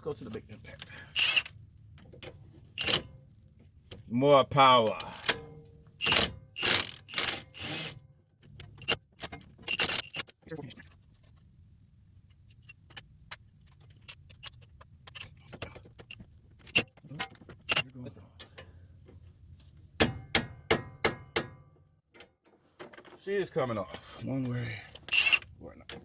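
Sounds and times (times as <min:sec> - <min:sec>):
impact wrench bursts: 0:01.1 - 0:01.5, 0:02.8 - 0:03.0, 0:05.0 - 0:08.0.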